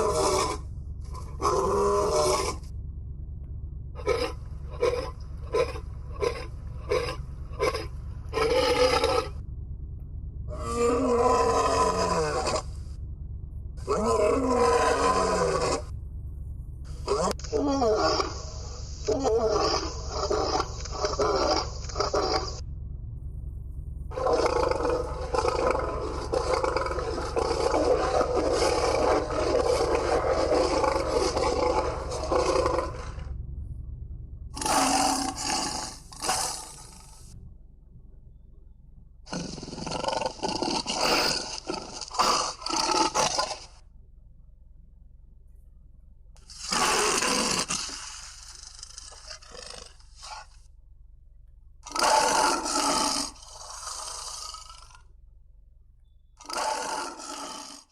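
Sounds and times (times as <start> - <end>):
lion grunting: 0.0 - 2.7, 3.9 - 9.4, 10.5 - 12.9, 13.8 - 15.9, 16.9 - 22.6, 24.1 - 33.4, 34.4 - 37.4, 39.2 - 43.8, 46.4 - 50.6, 51.8 - 55.1, 56.4 - 57.9
steady low hum: 0.0 - 57.9.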